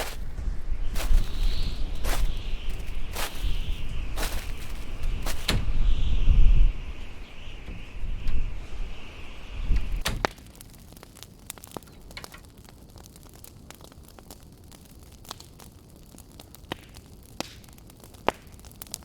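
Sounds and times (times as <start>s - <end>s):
fire crackling and popping: 0.0s - 19.0s.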